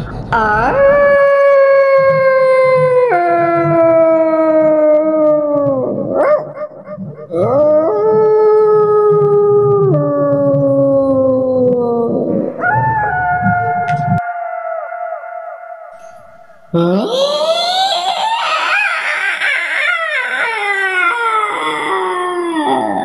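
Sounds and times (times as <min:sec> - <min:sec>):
dog howling: 0:00.3 - 0:23.0.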